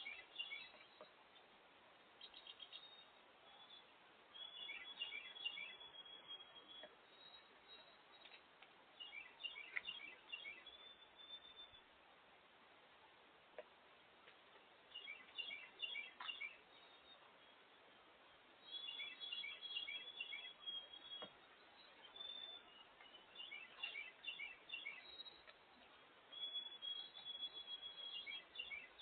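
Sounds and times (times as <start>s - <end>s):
small songbirds chirping: 0.0s - 29.0s
faint clicks: 25.4s - 25.9s.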